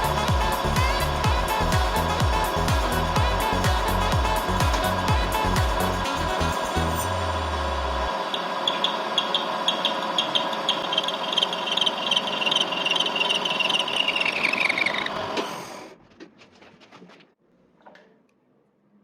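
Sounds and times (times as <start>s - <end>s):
lathe running: 0.0s - 15.6s
pulsing squeal: 5.8s - 15.7s.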